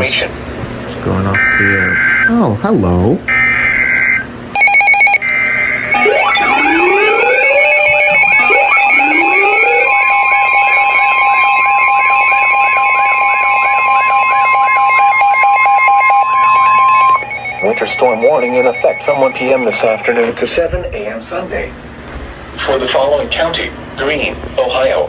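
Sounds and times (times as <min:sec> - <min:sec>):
steady warning tone: 0:00.0 - 0:25.0
screechy data bursts: 0:01.3 - 0:02.3, 0:03.3 - 0:20.5
warbling electronic alert alarm: 0:01.3 - 0:02.4, 0:03.3 - 0:20.6.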